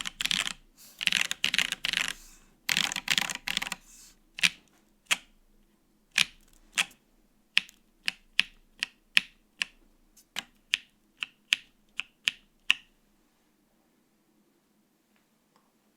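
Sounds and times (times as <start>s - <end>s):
mechanical keyboard keystrokes: 0.0s - 3.8s, 4.4s - 5.3s.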